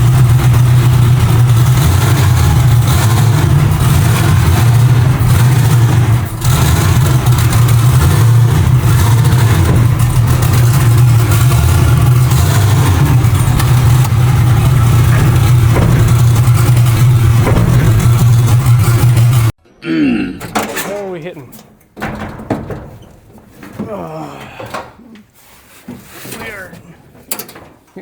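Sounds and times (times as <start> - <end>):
drag car engine running: 0.0 - 19.6.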